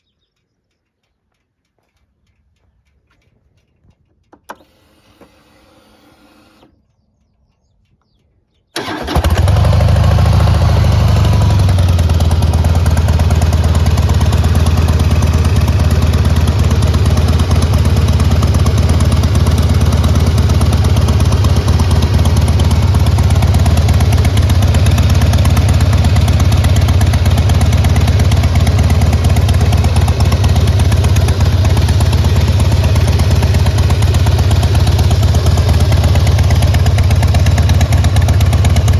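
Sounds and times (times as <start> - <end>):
motorcycle engine starting and idling: 8.7 - 38.9.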